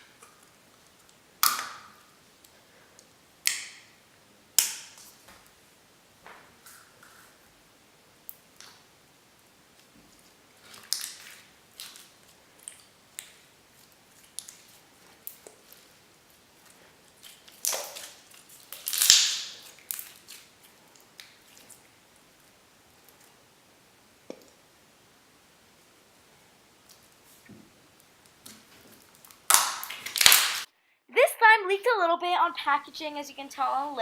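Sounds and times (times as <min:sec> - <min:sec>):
crackling squelches: 0:00.0 - 0:34.0
slime squishing with sticky pops: 0:09.7 - 0:23.2, 0:28.2 - 0:30.7.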